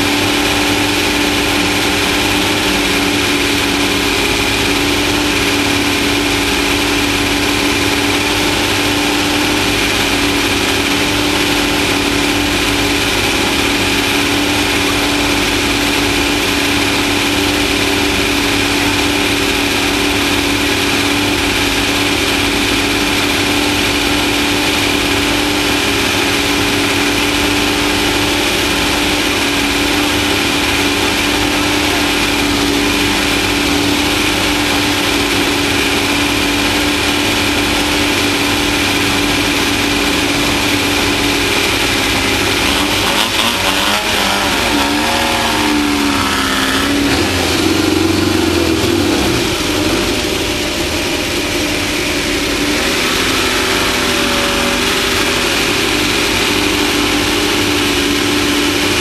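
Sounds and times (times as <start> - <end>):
driving noise: 0.0 - 59.0
race vehicle engine running: 0.0 - 59.0.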